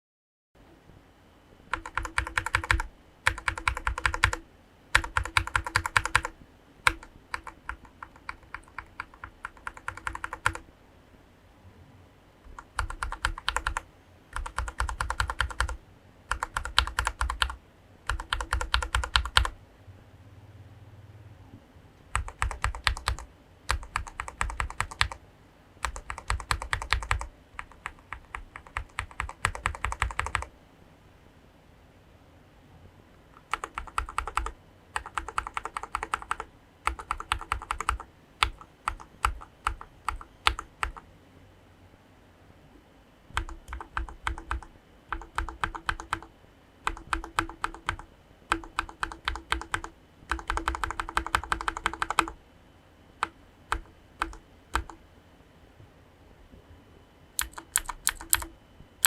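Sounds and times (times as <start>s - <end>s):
mechanical keyboard typing: 1.7s - 10.6s, 12.5s - 19.6s, 22.1s - 25.2s, 25.8s - 30.5s, 33.4s - 41.0s, 43.3s - 52.4s, 53.2s - 55.0s, 57.4s - 58.6s.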